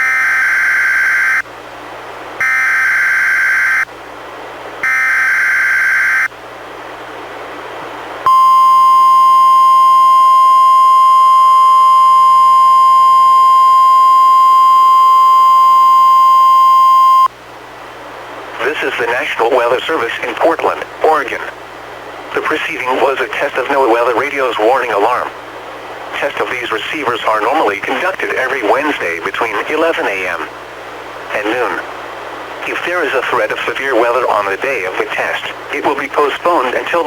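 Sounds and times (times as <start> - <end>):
steady warning alarm tone: 0.0 - 1.4, 2.4 - 3.9, 4.8 - 6.3, 8.3 - 17.3
radio hiss: 18.5 - 21.6, 22.3 - 25.4, 26.0 - 32.0, 32.6 - 37.0.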